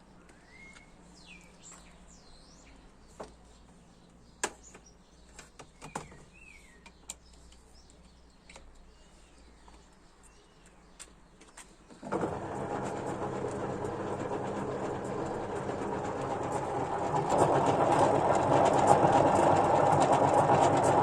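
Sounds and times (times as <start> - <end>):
faint bird chirps: 0.2 - 11.9.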